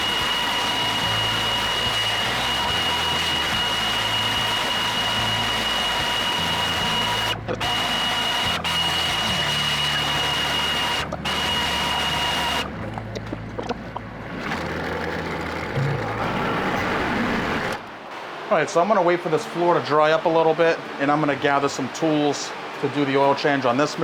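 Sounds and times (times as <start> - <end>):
steady high whine: 0.0 - 14.6
tractor diesel engine running: 0.0 - 17.8.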